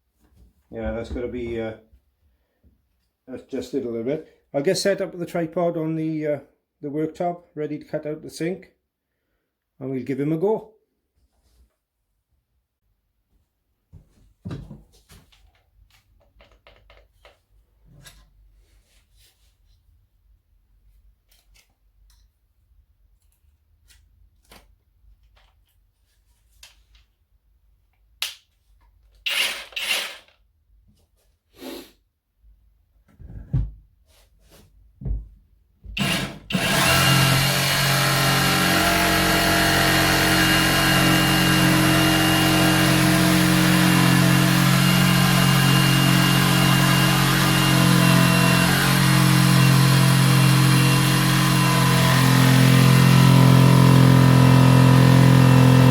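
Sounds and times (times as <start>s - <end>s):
jigsaw cutting wood: 29.3s - 30.3s, 36.0s - 55.9s.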